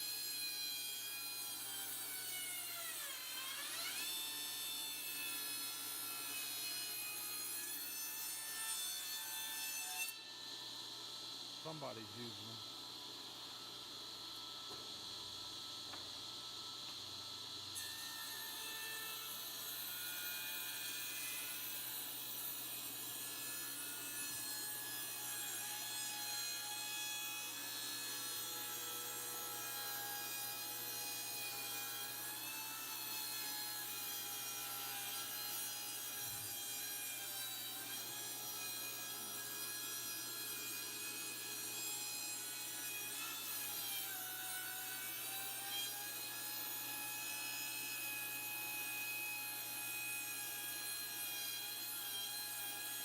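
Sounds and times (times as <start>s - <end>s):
table saw cutting wood: 0.0s - 10.8s, 17.8s - 53.0s.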